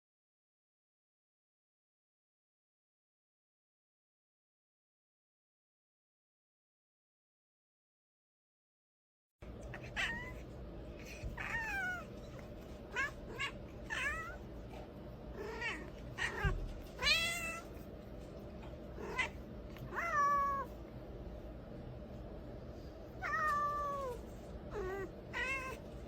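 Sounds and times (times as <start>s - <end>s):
cat meowing: 9.6s - 14.6s, 15.3s - 17.8s, 18.6s - 20.8s, 23.2s - 26.0s.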